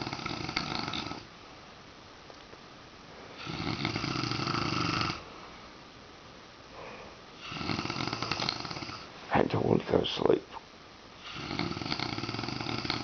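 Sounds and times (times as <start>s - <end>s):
man snoring: 0.0s - 1.3s, 3.4s - 5.2s, 7.4s - 9.1s, 11.2s - 13.0s.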